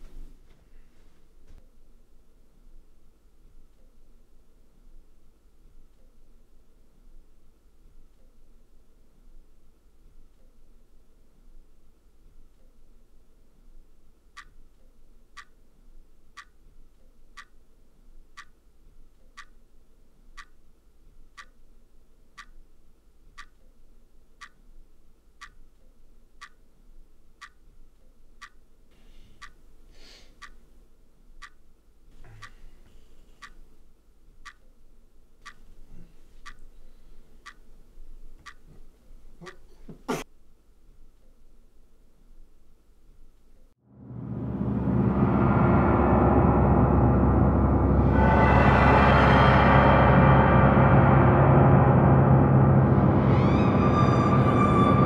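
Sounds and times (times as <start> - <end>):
clock ticking: 1.2 - 43.8.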